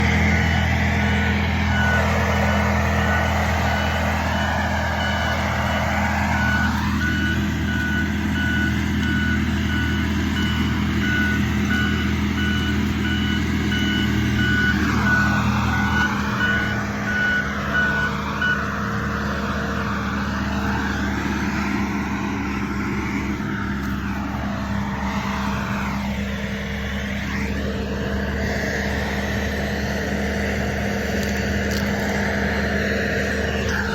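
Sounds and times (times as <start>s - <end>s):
backup alarm beeping: 0.0s - 18.7s
skid steer engine running: 0.0s - 33.9s.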